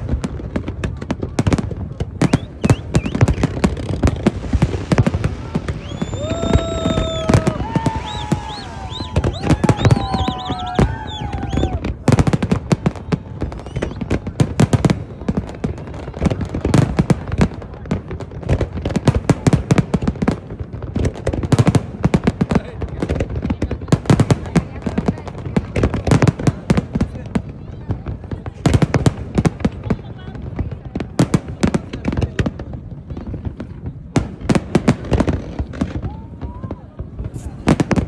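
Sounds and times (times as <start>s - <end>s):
whistling fireworks: 0.0s - 17.7s
fireworks bangs and crackles: 0.0s - 38.0s.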